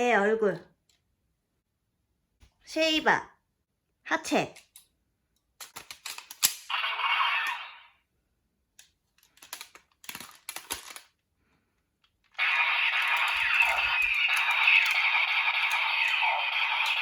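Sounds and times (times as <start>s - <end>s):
paper pieces clicking and tapping: 9.2s - 11.1s.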